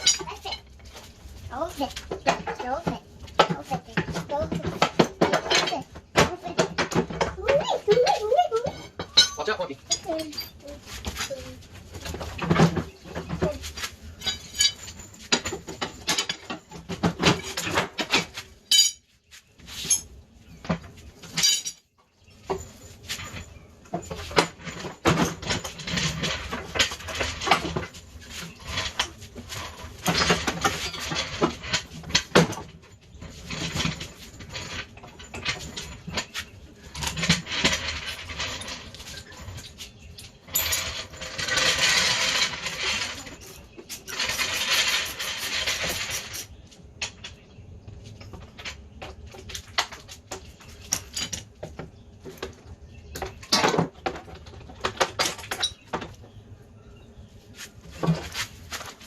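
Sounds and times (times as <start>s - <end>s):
metal tools clinking: 0.0s - 1.1s, 7.0s - 19.1s, 19.7s - 20.1s, 21.2s - 46.5s, 49.5s - 51.7s.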